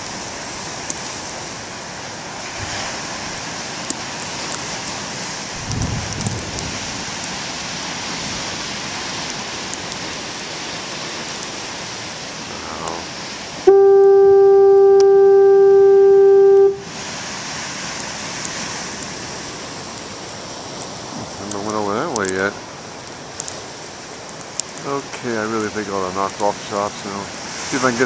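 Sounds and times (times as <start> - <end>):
foghorn blast: 13.6 - 16.9.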